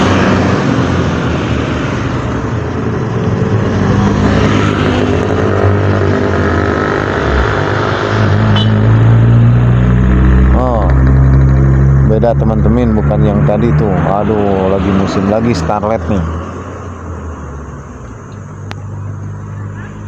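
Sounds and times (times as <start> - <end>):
road traffic passing: 0.0 - 20.0
tyre and road noise: 0.0 - 20.0.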